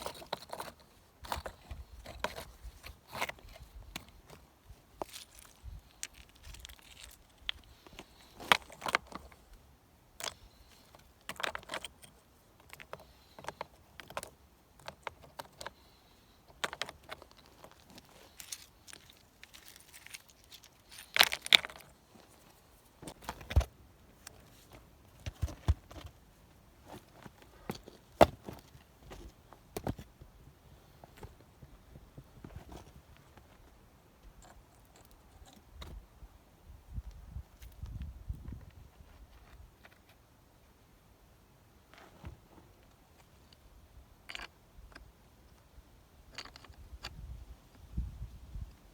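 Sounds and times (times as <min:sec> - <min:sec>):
knocks and clicks of stone and wood: 0:00.0 - 0:04.4, 0:10.2 - 0:15.8, 0:16.5 - 0:22.0, 0:23.0 - 0:26.2, 0:26.9 - 0:30.2, 0:44.2 - 0:45.6, 0:46.3 - 0:47.8.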